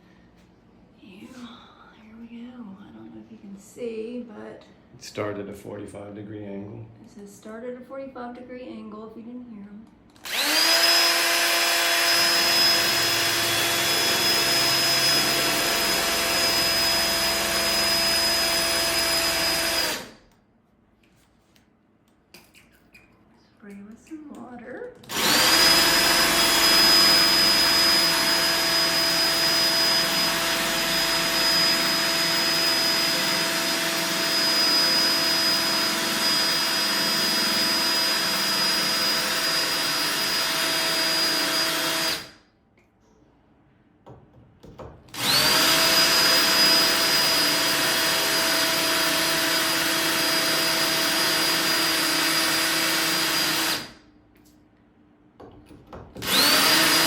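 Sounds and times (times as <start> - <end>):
electric drill whining into tile: 10.2 - 20.2, 25.0 - 42.4, 45.1 - 54.0, 56.2 - 57.0.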